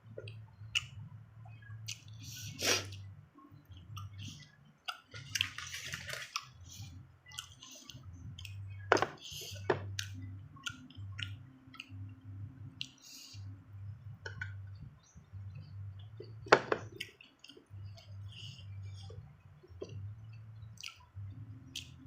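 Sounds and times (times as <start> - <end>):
mouth clicks: 0.2 - 3.1
wet squishy chewing: 4.0 - 6.6
chewing crunchy food: 4.0 - 12.0.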